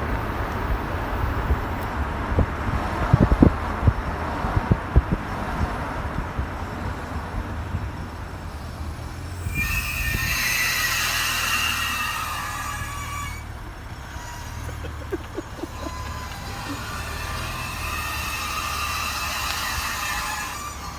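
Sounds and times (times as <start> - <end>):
low road rumble: 0.0 - 20.9
high-pitched vehicle squeal: 7.9 - 20.9.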